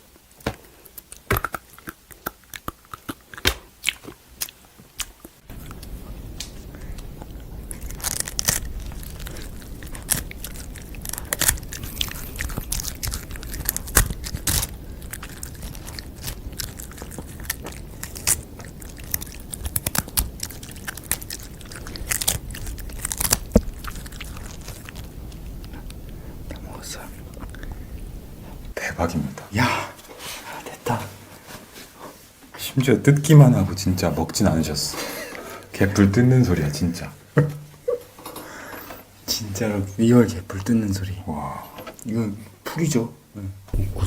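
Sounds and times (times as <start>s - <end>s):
biting and chewing crunches: 0.4s - 28.8s
steady hiss: 3.2s - 44.0s.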